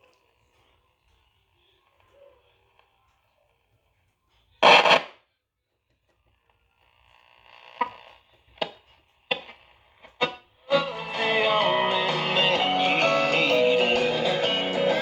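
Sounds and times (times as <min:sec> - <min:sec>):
radio static hiss: 0:04.4 - 0:05.2, 0:06.6 - 0:15.0
sharp static crackles: 0:04.6 - 0:05.2, 0:06.8 - 0:10.6.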